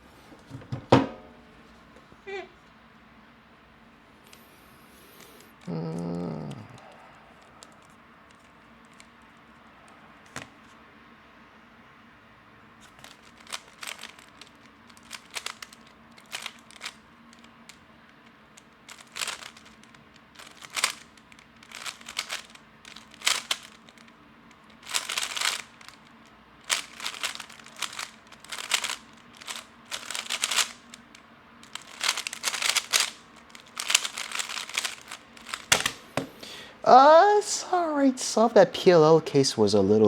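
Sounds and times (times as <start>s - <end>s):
speed cube plastic clacking: 5.2s - 9.6s, 10.2s - 10.8s, 12.8s - 36.4s.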